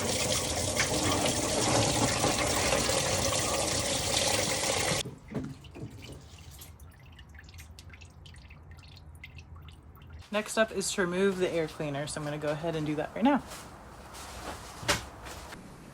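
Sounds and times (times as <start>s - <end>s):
liquid pouring into bucket: 0.0s - 10.3s
faint drips: 5.6s - 10.4s.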